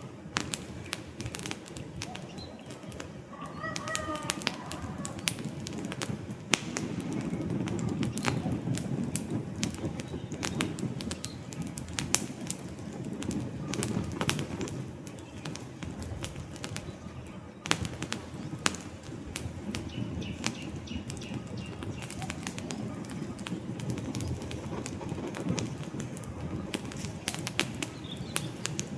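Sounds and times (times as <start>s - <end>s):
campfire crackling and popping: 0.0s - 28.9s
low rumble of flames: 0.0s - 28.9s
faint high bird call: 3.3s - 5.4s.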